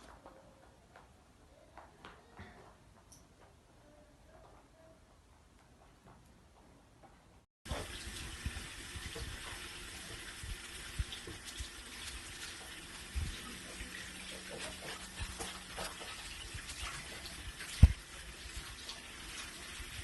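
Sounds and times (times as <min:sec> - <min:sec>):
running water rushing: 0:07.7 - 0:20.0.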